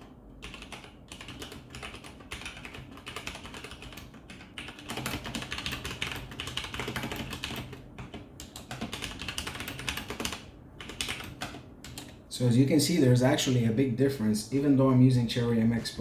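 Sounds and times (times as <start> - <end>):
fast typing on mechanical keyboard: 0.4 - 12.2.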